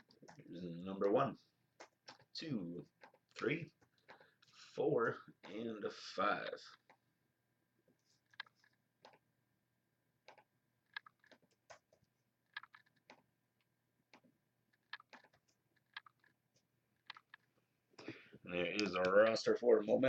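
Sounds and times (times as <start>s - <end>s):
mouse and keyboard clicks: 8.1s - 9.2s, 10.2s - 13.3s, 14.1s - 17.5s, 18.8s - 19.3s.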